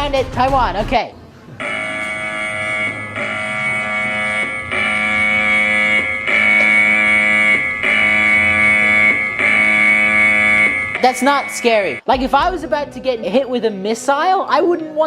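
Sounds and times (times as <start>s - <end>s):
emergency alert tone blasts: 1.6s - 12.1s.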